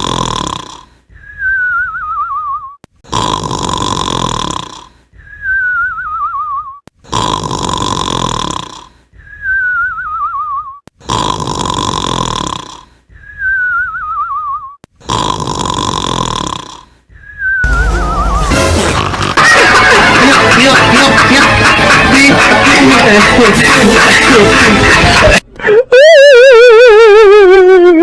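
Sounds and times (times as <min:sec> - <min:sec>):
cartoon snore: 0:00.0 - 0:01.0, 0:03.0 - 0:05.0, 0:07.0 - 0:09.0, 0:11.0 - 0:13.0, 0:14.9 - 0:17.0, 0:17.6 - 0:19.6
falling warbling whistle: 0:17.4 - 0:18.6
music: 0:17.6 - 0:25.4.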